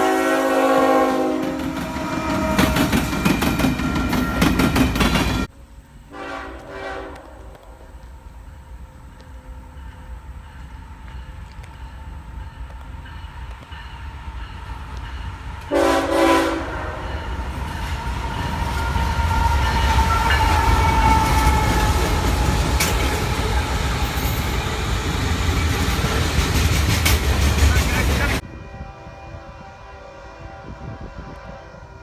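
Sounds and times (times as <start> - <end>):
train air horn blast: 0.0 - 3.1, 6.1 - 7.9, 15.7 - 17.4, 28.4 - 32.0
rail noise of passing train: 0.0 - 32.0
train rumbling: 0.0 - 32.0.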